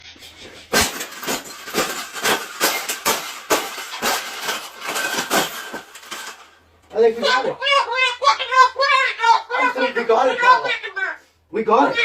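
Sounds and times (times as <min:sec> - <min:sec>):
cage clattering and knocking: 0:00.4 - 0:06.6.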